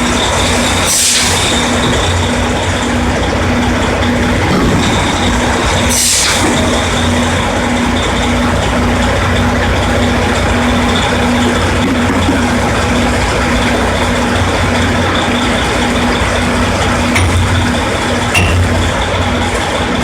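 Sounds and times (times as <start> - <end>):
drilling rig machinery running: 0.0 - 20.0.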